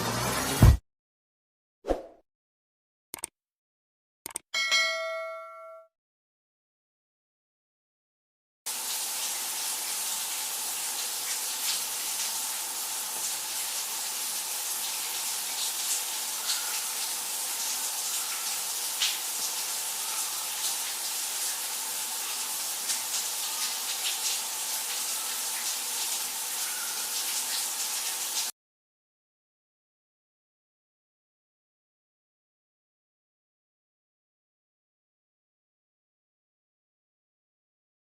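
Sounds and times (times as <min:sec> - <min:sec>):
shower water spraying: 0:08.7 - 0:28.5.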